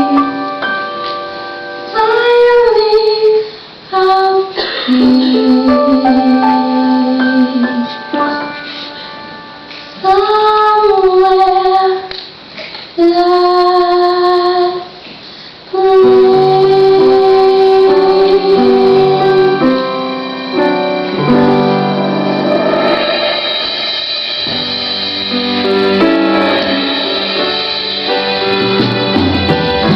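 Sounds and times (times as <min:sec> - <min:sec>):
piano accompaniment: 0:00.0 - 0:03.5, 0:04.6 - 0:12.1, 0:15.8 - 0:29.9
woman singing slow song: 0:01.9 - 0:08.6, 0:09.9 - 0:12.3, 0:13.0 - 0:15.0, 0:15.7 - 0:19.9.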